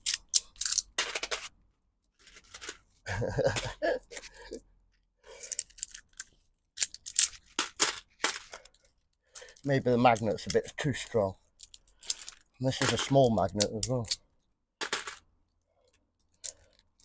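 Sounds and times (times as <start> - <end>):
coins clinking and jingling: 0.0 - 1.5, 11.6 - 14.2, 14.8 - 15.2.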